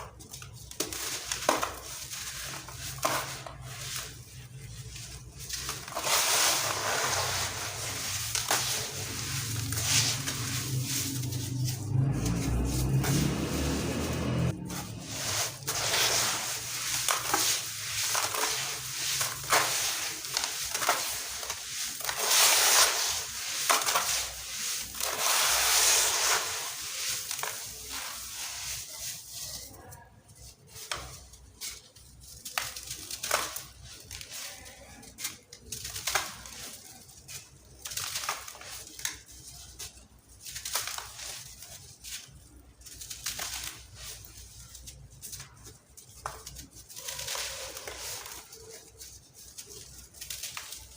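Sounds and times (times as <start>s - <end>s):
gritty chunks crunching: 4.8s - 29.5s.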